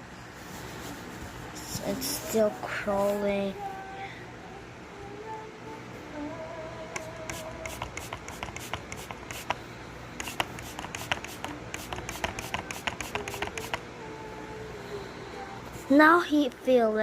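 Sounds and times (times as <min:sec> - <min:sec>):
low steady hum: 0:00.0 - 0:17.0
quick irregular clicks and taps: 0:07.0 - 0:09.6, 0:10.2 - 0:13.8.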